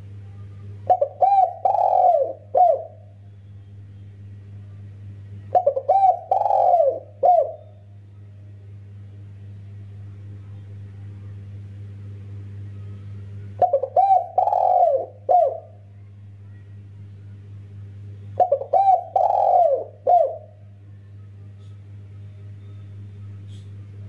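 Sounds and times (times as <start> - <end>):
low electrical hum: 0.0 - 24.0
dove cooing: 0.8 - 3.1, 5.5 - 7.8, 13.6 - 15.8, 18.4 - 20.6.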